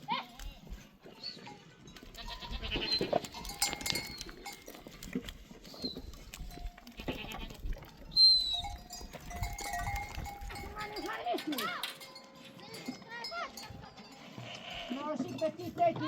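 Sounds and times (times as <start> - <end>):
sheep and goats bleating: 0.1 - 5.1, 6.4 - 16.0
high whistle-like call: 8.1 - 8.7.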